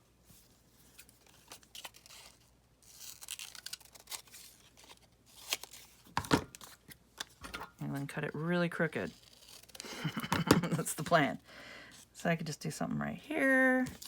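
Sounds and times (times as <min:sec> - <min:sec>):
paper rustling and crinkling: 0:00.4 - 0:08.4, 0:09.0 - 0:10.4, 0:13.5 - 0:14.0.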